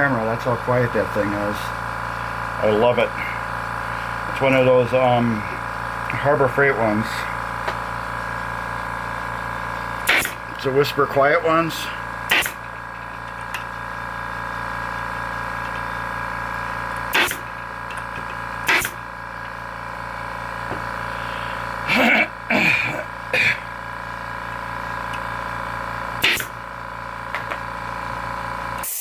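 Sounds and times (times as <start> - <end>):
air compressor humming: 0.0 - 29.0
pneumatic stapler snaps: 10.0 - 10.4, 12.3 - 12.6, 17.0 - 19.0, 26.2 - 26.6, 28.8 - 29.0.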